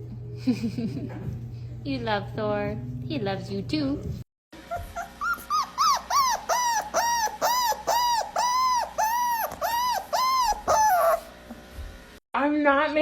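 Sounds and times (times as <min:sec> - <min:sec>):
dog yelping: 0:04.6 - 0:11.3.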